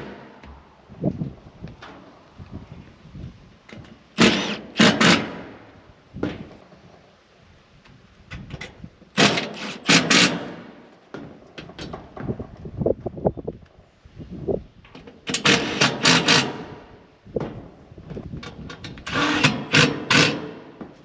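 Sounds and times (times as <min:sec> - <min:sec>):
impact wrench bursts: 0:04.2 - 0:05.6, 0:15.3 - 0:16.8, 0:19.0 - 0:20.7.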